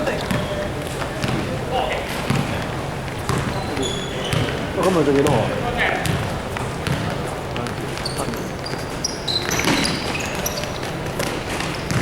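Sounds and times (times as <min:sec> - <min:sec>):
sneaker squeaks on floor: 0:00.0 - 0:05.4, 0:06.0 - 0:12.0
basketball bouncing on hard court: 0:00.2 - 0:01.5, 0:02.2 - 0:04.7, 0:06.0 - 0:08.1, 0:10.8 - 0:12.0.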